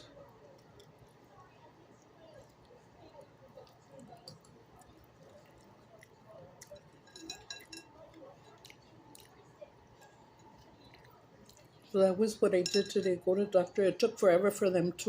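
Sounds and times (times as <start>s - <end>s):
soft chewing: 0.0s - 13.6s
utensil clinking against dish: 6.6s - 9.3s, 12.3s - 13.2s.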